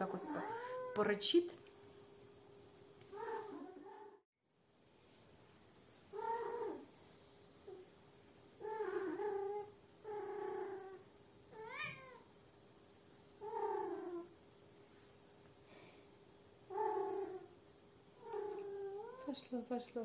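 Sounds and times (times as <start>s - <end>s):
cat yowling: 11.6s - 12.2s.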